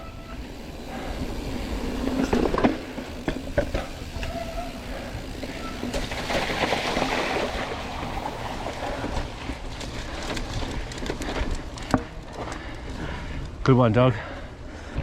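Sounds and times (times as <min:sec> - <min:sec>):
bike tyres rolling on dirt: 0:00.0 - 0:15.0
bike knocks and rattles on bumps: 0:02.2 - 0:13.0.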